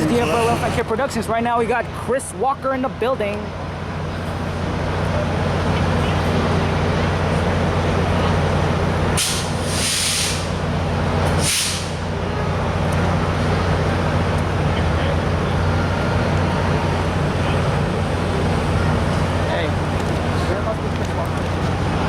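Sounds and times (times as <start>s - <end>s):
diesel locomotive idling: 0.0s - 22.0s
air brake hiss: 9.2s - 10.6s, 11.3s - 12.0s.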